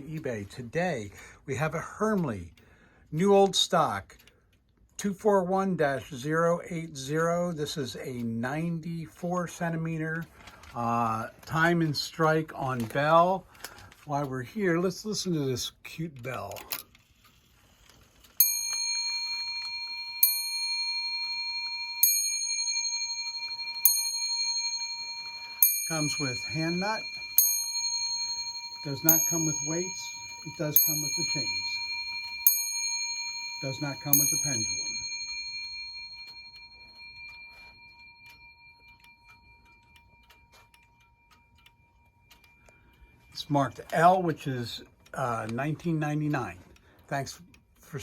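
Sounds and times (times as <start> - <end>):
clock movement ticking: 0.0 - 48.0
clock hammer striking bell: 18.4 - 41.5.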